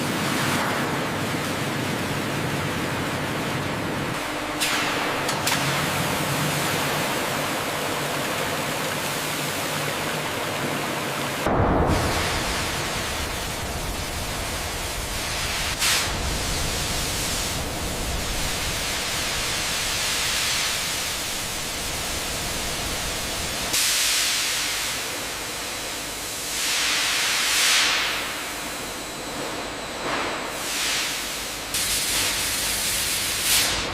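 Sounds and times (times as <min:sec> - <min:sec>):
factory machinery hissing: 0:11.3 - 0:33.9.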